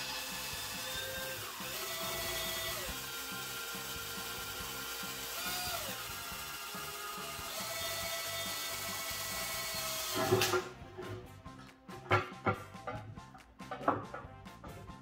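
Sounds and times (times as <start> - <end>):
cordless drill motor whine: 0.0 - 10.5.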